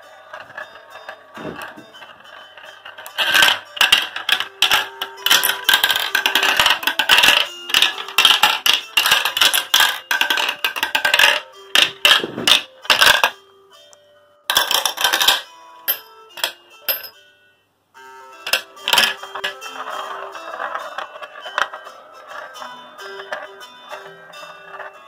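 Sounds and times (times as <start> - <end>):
marbles clattering down a run: 0.3 - 13.4.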